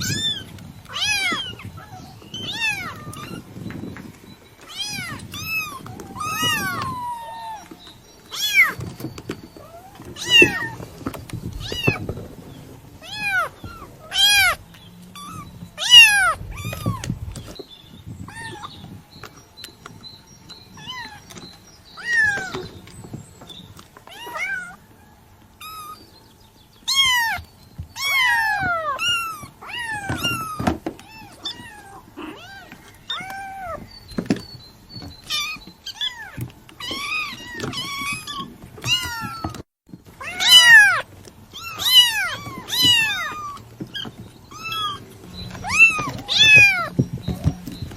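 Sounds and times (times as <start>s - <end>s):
kitten meowing: 0.0s - 3.4s, 4.7s - 8.8s, 15.2s - 17.2s, 40.2s - 46.9s.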